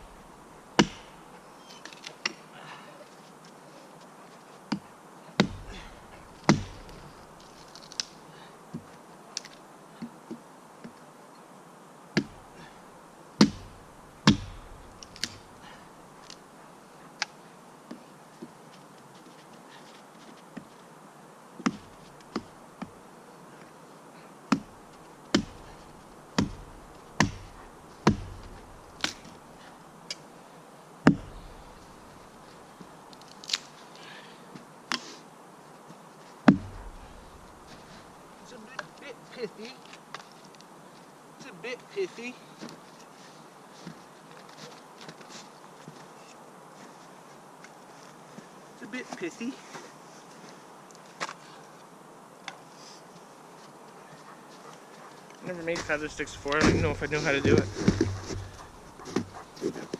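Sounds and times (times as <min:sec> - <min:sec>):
axe chopping wood: 0:00.8 - 0:01.2, 0:05.4 - 0:07.1, 0:12.2 - 0:12.5, 0:13.4 - 0:15.4, 0:21.6 - 0:22.5, 0:24.5 - 0:25.8, 0:26.4 - 0:29.3, 0:31.1 - 0:31.7, 0:36.5 - 0:37.2, 0:55.8 - 0:59.3.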